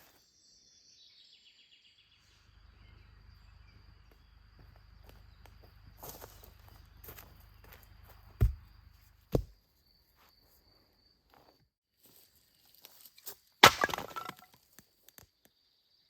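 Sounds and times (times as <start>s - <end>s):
wood cracking and splintering: 13.6s - 14.6s.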